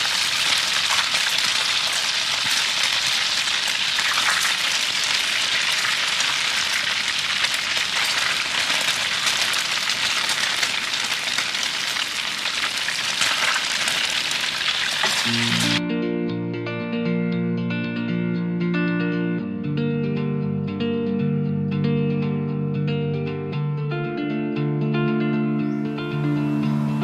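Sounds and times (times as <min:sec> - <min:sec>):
food sizzling in hot oil: 0:00.0 - 0:15.8.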